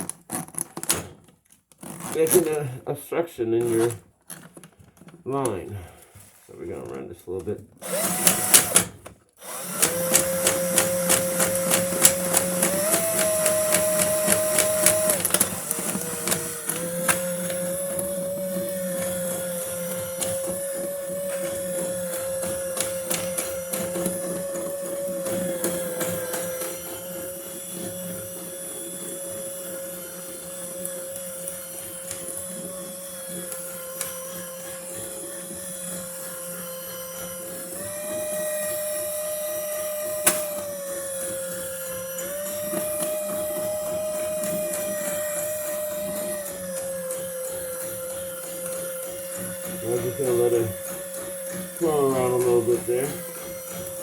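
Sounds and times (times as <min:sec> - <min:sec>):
power drill motor whine: 0:07.8 - 0:54.0
drain snake cable rattling: 0:09.6 - 0:20.6.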